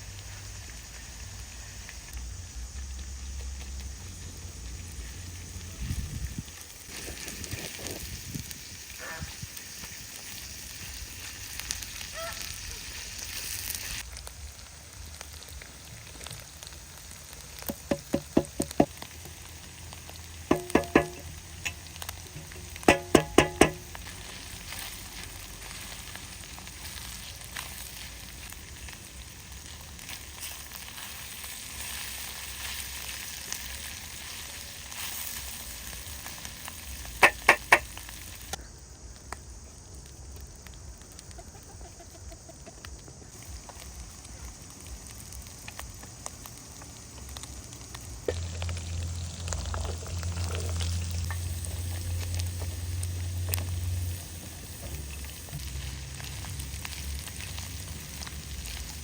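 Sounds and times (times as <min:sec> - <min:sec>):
food sizzling in a pan: 0:00.0 - 0:38.6, 0:43.3 - 0:59.0
sharp ringing knocks: 0:20.5 - 0:21.3, 0:22.9 - 0:23.8.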